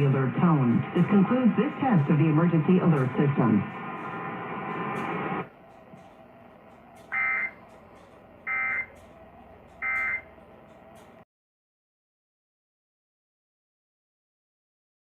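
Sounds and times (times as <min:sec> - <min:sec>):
broadcast audio: 0:00.0 - 0:11.2.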